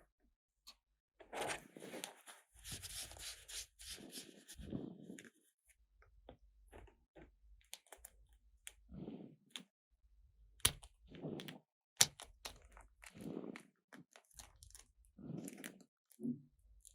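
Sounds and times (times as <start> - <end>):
soft rubbing: 1.8 - 5.2.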